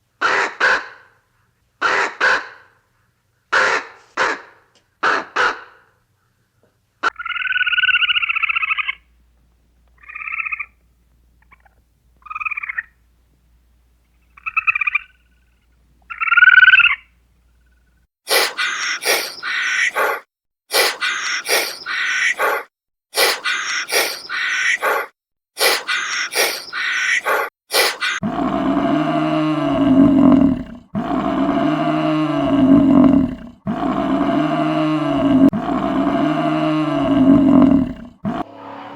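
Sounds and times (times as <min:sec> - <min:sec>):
rough animal call: 0:17.7 - 0:38.9
long pitched animal call: 0:18.3 - 0:38.9.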